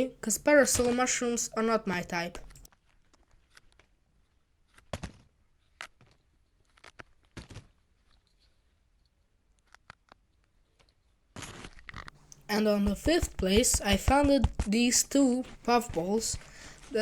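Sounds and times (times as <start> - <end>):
person speaking: 0.0 - 2.7, 12.3 - 17.0.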